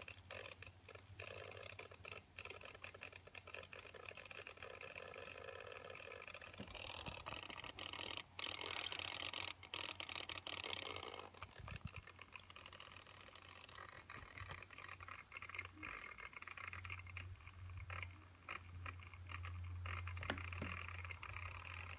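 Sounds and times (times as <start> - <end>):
laptop whirring buzz: 0.0 - 21.9
laptop clicks: 20.1 - 20.9.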